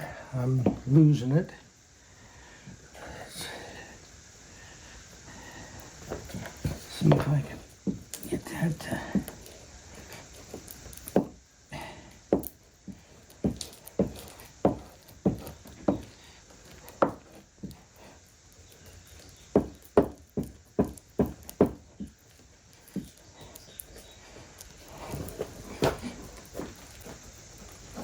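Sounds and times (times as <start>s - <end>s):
sharp wooden knocks and taps: 10.5s - 11.4s, 12.3s - 12.6s, 13.4s - 16.1s, 16.9s - 17.4s, 19.5s - 22.2s.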